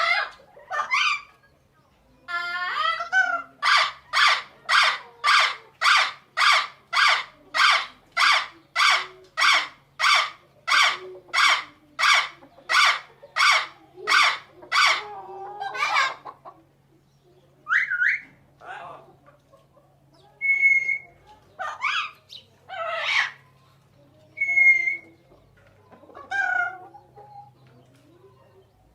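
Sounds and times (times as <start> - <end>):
parrot squawking: 0.0 - 1.3, 2.3 - 16.4, 20.4 - 23.4.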